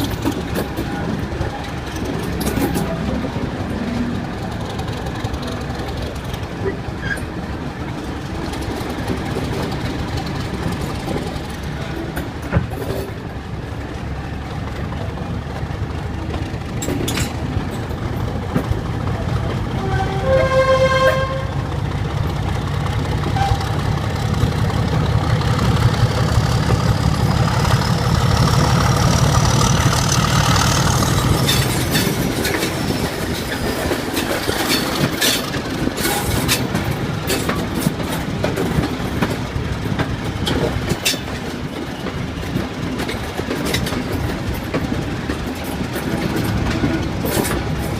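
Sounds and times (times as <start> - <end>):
diesel locomotive engine passing: 0.0 - 47.9
wheels clicking over rail joints: 0.0 - 47.9
locomotive horn blast: 19.7 - 21.6, 23.4 - 23.8.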